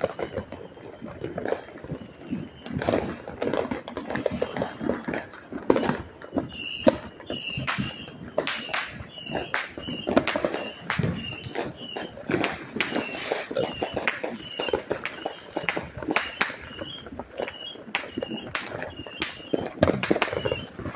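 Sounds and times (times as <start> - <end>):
fireworks bangs and pops: 0.0 - 20.9
short high-pitched chirp: 12.9 - 15.6.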